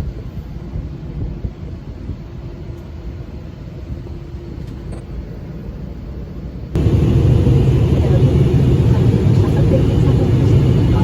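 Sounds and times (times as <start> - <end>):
vehicle rumble from inside: 6.7 - 11.0.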